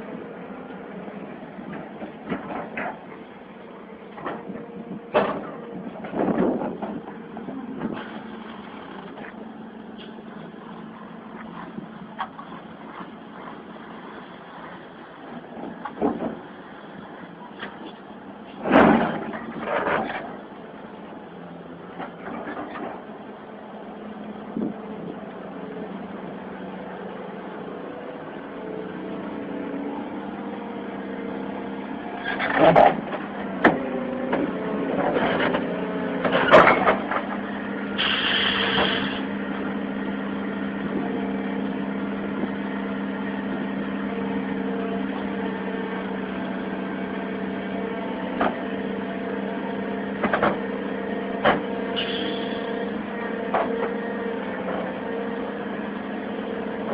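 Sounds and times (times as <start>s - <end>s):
heavy diesel engine running: 0.0s - 56.9s
brief hiss: 38.0s - 39.2s, 52.0s - 52.6s.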